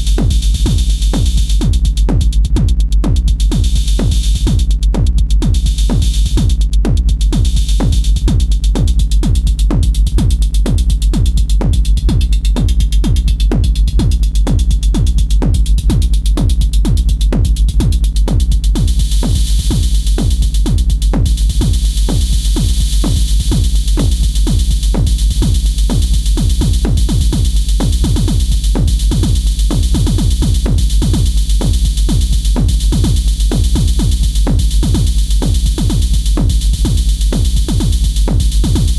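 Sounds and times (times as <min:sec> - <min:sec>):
electronic dance music: 0:17.9 - 0:38.9.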